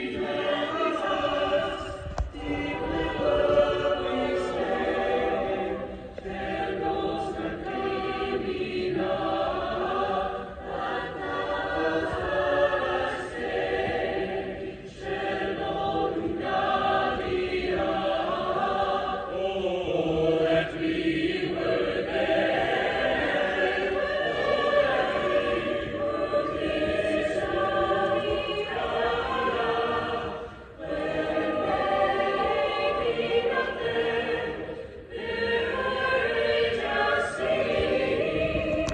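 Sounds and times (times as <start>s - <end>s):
choir singing: 0.0s - 38.9s
singers breathing: 5.8s - 6.2s, 30.3s - 30.8s, 34.6s - 35.1s.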